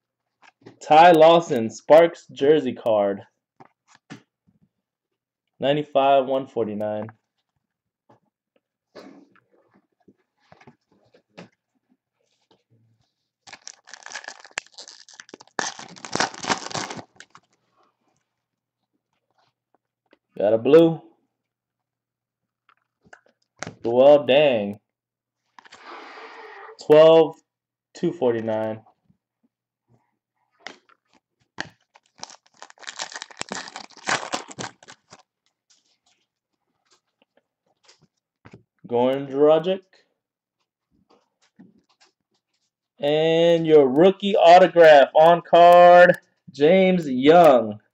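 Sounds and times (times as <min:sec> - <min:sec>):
wrapper crinkling and tearing: 0:13.4 - 0:17.5, 0:31.1 - 0:35.3.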